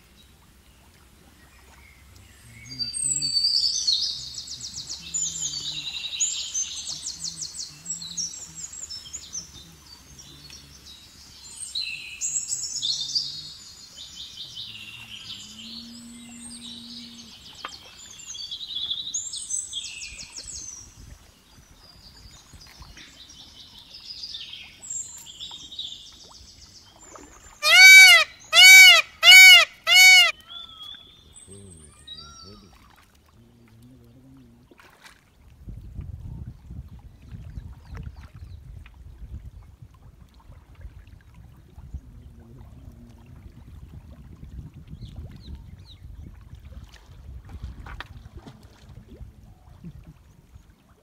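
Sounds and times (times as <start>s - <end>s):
birds chirping and singing: 1.9s - 17.4s, 27.6s - 32.6s
animal short pitched calls: 27.6s - 30.3s.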